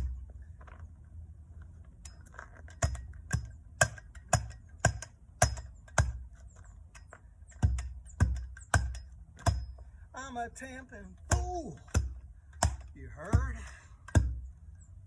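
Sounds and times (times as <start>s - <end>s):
hand tamper thuds: 11.2s - 14.5s.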